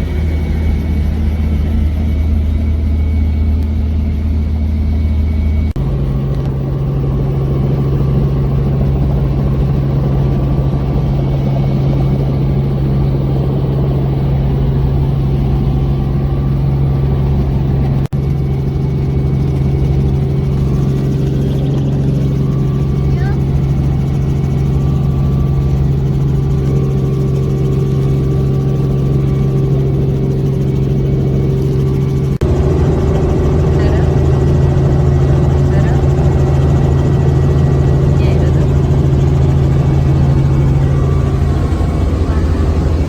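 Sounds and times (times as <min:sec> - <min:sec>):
helicopter engine and rotor drone: 0:00.0 - 0:43.0.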